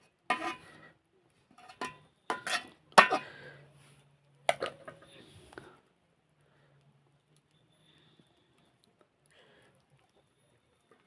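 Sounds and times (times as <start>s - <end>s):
dishes and cutlery clinking: 0.3s - 0.8s, 1.6s - 3.3s.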